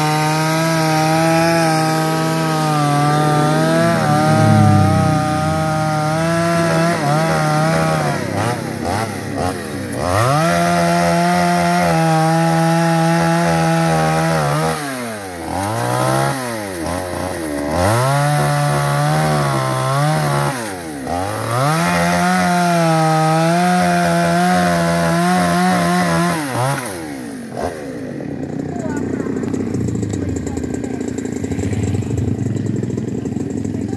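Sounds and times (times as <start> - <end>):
chainsaw cutting wood: 0.0 - 4.2, 5.9 - 28.8.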